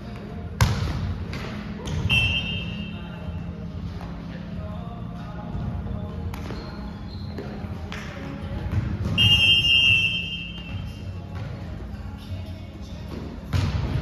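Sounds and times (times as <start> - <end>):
sports hall rumble: 0.0 - 14.0
ball and footstep thuds: 0.1 - 2.3, 7.3 - 9.5, 10.4 - 11.9, 13.0 - 14.0
referee's whistle blast: 2.1 - 3.1, 9.2 - 10.7.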